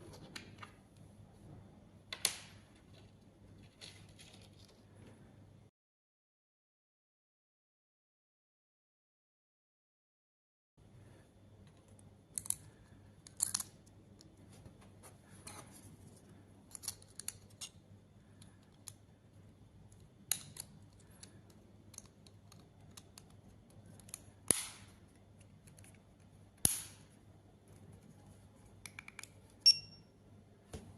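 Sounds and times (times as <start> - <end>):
plastic parts clicking and snapping: 11.9 - 14.3, 16.7 - 17.8, 19.9 - 27.0.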